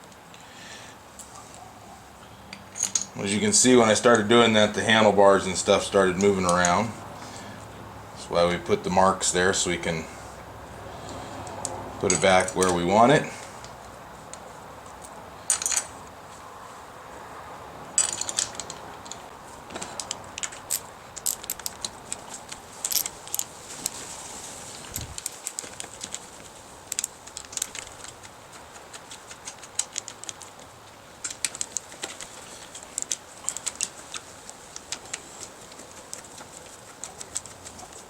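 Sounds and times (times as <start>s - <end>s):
metal tools clinking: 2.5s - 6.9s, 15.0s - 16.0s, 18.0s - 19.2s, 19.9s - 24.0s.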